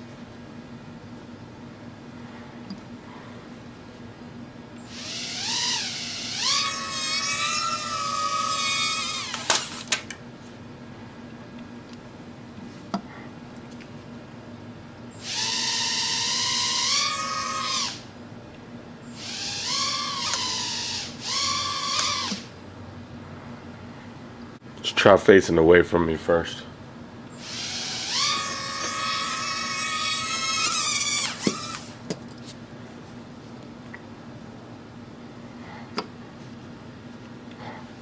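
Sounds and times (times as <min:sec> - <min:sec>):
drone motors whining: 0:04.8 - 0:10.0, 0:15.2 - 0:18.1, 0:19.1 - 0:22.5, 0:27.3 - 0:32.0.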